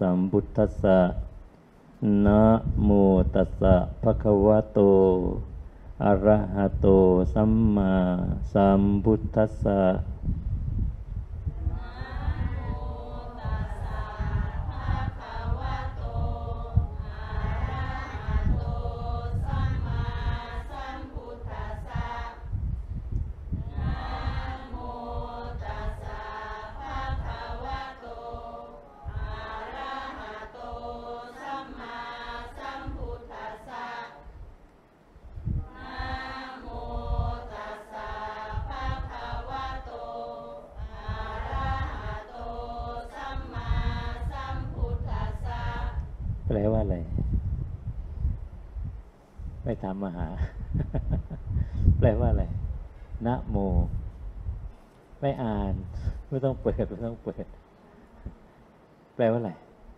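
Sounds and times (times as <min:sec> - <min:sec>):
group of voices chanting: 0:11.7 - 0:22.4, 0:23.6 - 0:34.2, 0:35.6 - 0:46.0.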